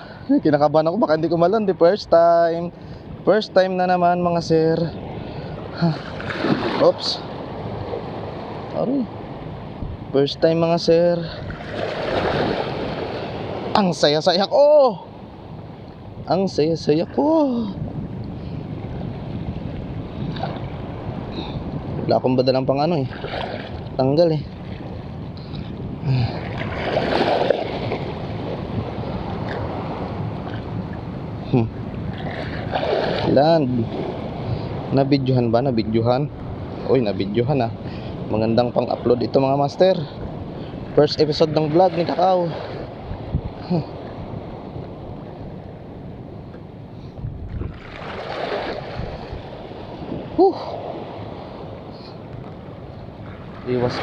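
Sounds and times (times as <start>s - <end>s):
wind on microphone: 1.0s - 54.0s
water washing at shore: 4.4s - 9.8s, 10.8s - 15.2s, 19.0s - 35.3s, 37.6s - 45.7s, 47.4s - 54.0s.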